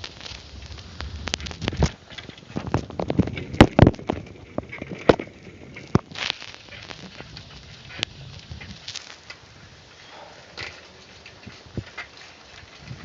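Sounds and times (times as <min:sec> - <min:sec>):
sharp clicks and knocks: 0:01.0 - 0:09.4.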